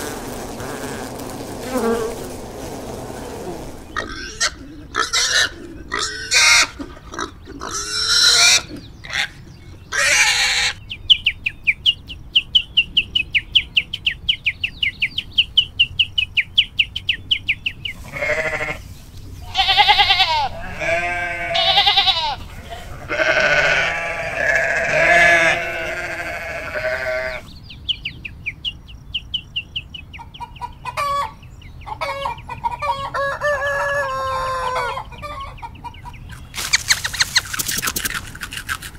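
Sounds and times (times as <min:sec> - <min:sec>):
goat bleating: 0:18.0 - 0:18.8, 0:19.4 - 0:27.4
fast high chirping: 0:36.4 - 0:38.9.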